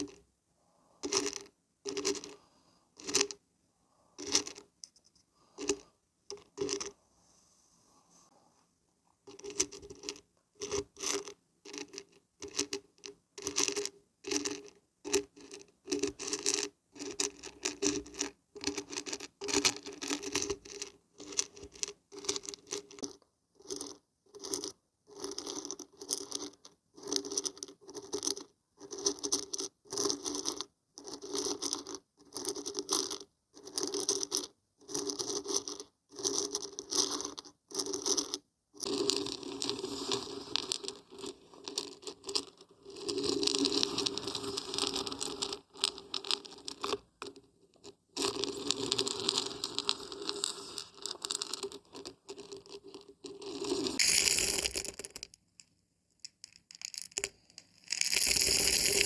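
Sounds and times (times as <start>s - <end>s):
dried beans rattling when shaken: 48.2s - 55.3s, 56.3s - 59.0s.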